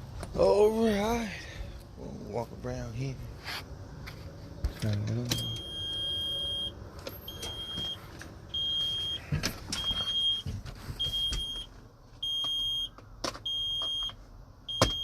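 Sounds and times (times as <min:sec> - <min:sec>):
truck warning alarm beeping: 0:05.3 - 0:15.0.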